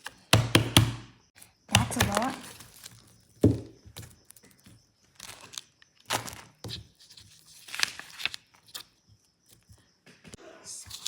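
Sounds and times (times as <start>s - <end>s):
squishy toys rustling and scraping: 5.1s - 9.0s.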